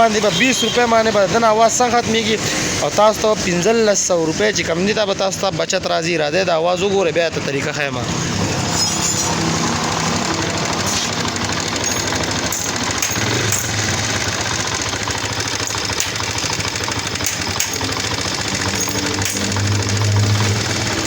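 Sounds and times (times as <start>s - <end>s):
motorcycle engine running: 0.0s - 5.9s, 7.9s - 21.0s
timing chain rattle: 8.6s - 21.0s.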